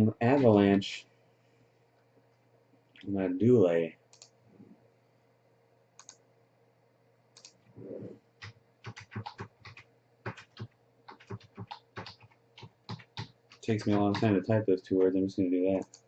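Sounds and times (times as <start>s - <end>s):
typing on computer keyboard: 8.4s - 14.4s.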